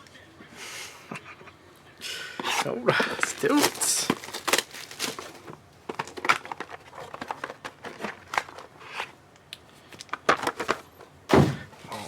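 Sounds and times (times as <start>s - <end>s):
plastic and foil wrappers crinkling: 2.4s - 9.1s.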